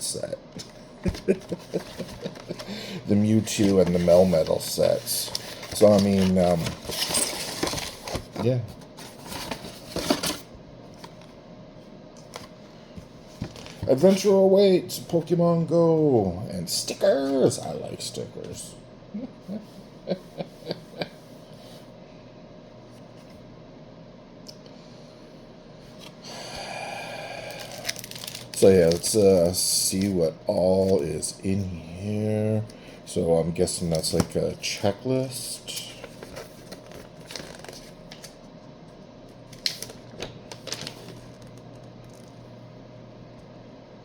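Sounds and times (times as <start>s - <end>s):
steady low hum: 0.0s - 44.0s
paper rustling: 0.6s - 10.4s, 27.7s - 30.2s, 35.7s - 38.3s, 39.5s - 42.3s.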